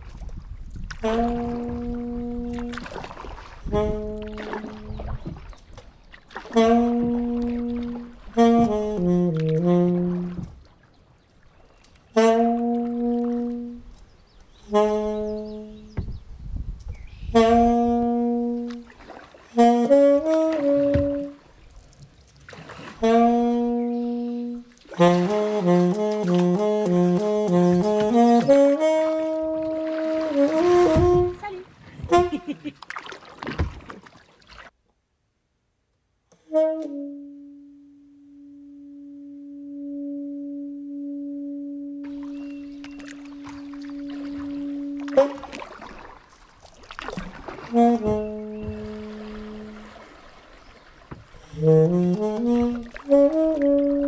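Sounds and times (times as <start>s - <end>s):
solo wind instrument: 0.0s - 22.1s, 22.8s - 32.8s, 36.3s - 54.0s
long held low music note: 36.5s - 45.6s, 47.7s - 50.1s.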